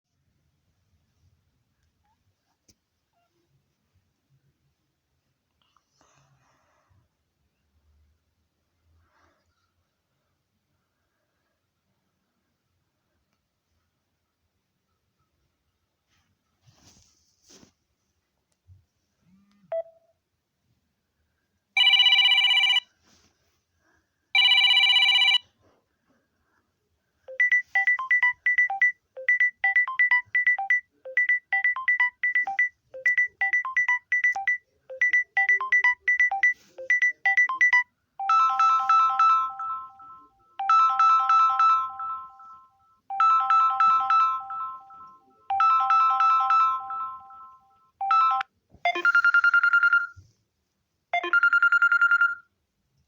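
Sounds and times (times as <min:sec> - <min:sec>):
buzzing phone rings: 0:21.8 - 0:22.8, 0:24.4 - 0:25.4.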